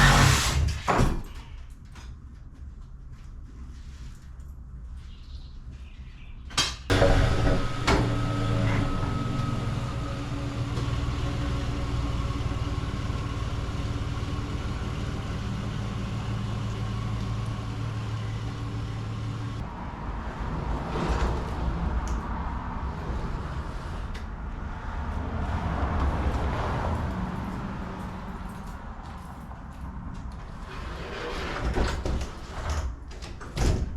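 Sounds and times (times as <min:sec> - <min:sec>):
motor humming: 0:06.9 - 0:19.6.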